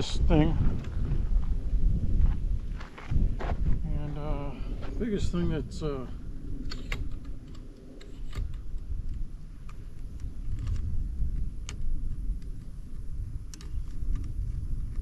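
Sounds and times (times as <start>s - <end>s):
wind: 0.0s - 15.0s
sharp clicks and ticks: 6.6s - 15.0s.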